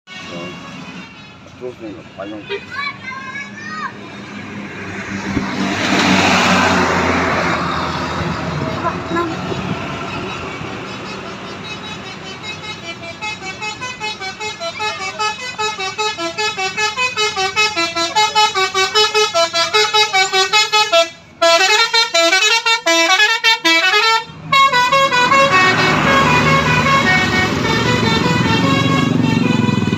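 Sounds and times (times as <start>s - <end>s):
bus musical horn tune: 0.1s - 2.6s, 8.6s - 29.9s
bus engine rumble: 0.1s - 29.9s.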